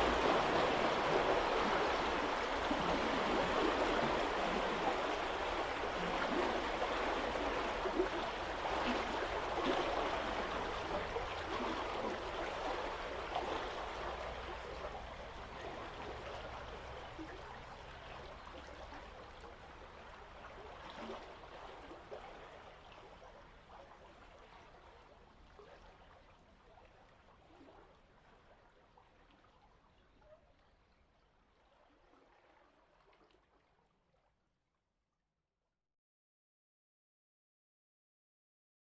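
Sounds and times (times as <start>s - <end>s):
water rushing and gurgling: 0.0s - 21.7s.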